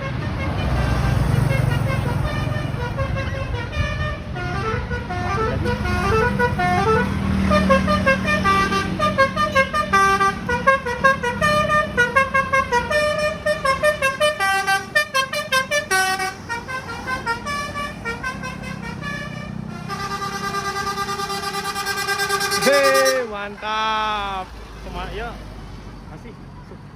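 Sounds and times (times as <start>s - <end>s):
multi-tone bus horn melody: 0.0s - 23.6s
bus engine humming: 0.0s - 26.9s.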